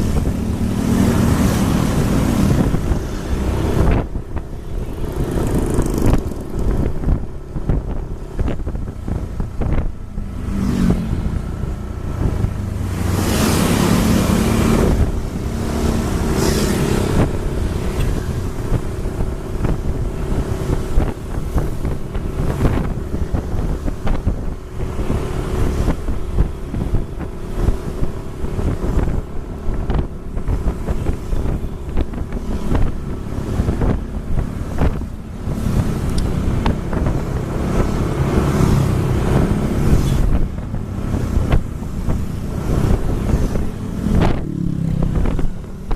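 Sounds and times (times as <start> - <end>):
loud rushing: 0.0 - 45.8
vehicle engine and road noise: 0.0 - 45.9
wind buffeting microphone: 0.0 - 45.9.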